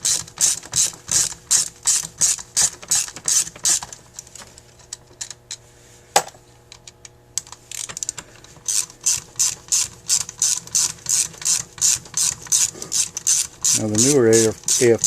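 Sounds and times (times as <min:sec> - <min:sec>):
ratchet tool clicking: 0:07.4 - 0:15.0.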